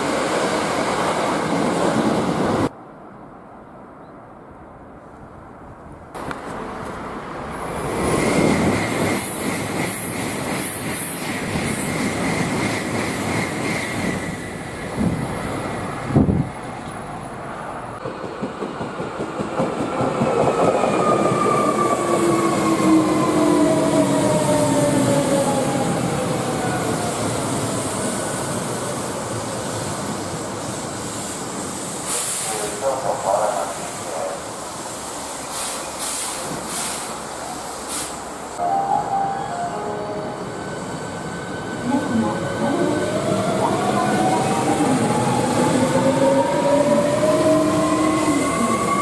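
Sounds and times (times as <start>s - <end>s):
train wheels clattering on rails: 18.0s - 21.2s.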